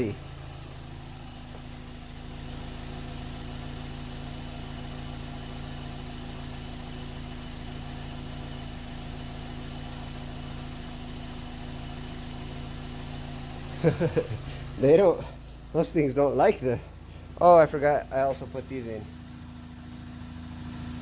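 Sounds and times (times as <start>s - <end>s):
car engine idling: 0.0s - 21.0s.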